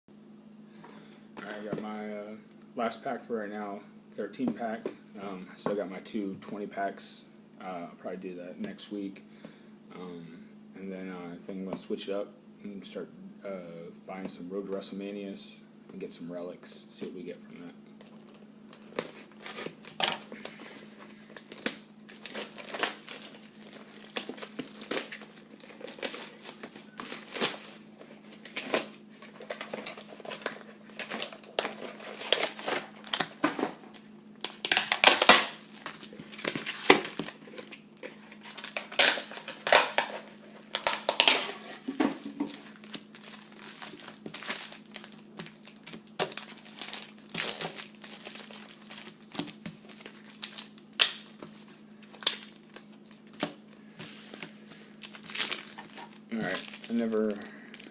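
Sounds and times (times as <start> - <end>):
faint steady hum: 0.1 - 57.9
plastic packaging crinkling: 18.0 - 57.9.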